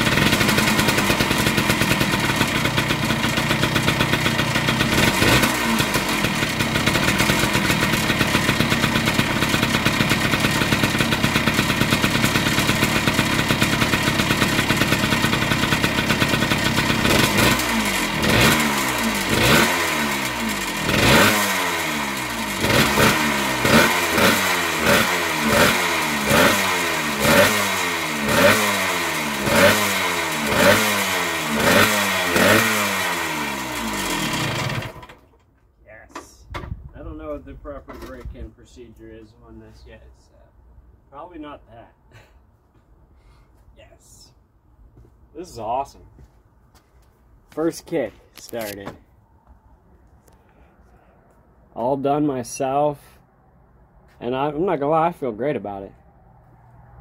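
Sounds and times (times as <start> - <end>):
two-stroke engine idling and revving: 0.0 - 35.3
exhaust rattle: 0.0 - 35.4.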